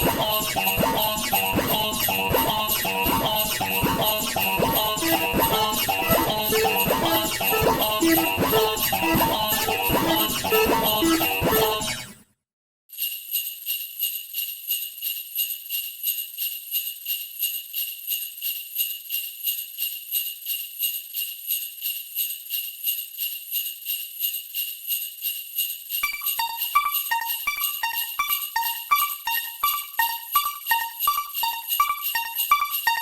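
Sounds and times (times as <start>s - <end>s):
bells ringing rapidly: 0.0s - 12.2s, 26.0s - 33.0s
music: 0.0s - 12.2s, 26.0s - 33.0s.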